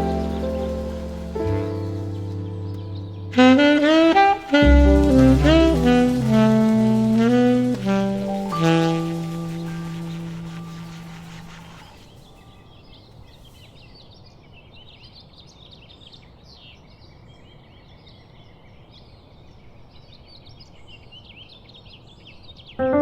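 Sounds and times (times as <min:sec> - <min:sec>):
low background rumble: 0:00.0 - 0:03.9
music track: 0:00.0 - 0:12.0, 0:22.8 - 0:23.0
small birds chirping: 0:00.0 - 0:22.9.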